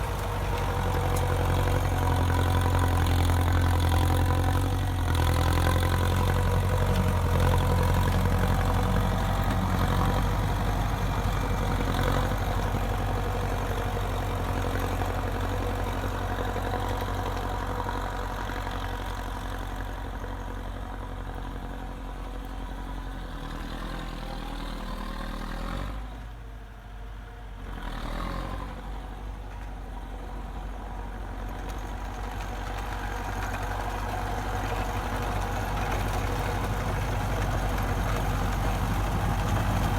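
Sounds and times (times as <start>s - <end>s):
diesel tractor engine running: 0.0s - 27.6s, 28.6s - 39.9s.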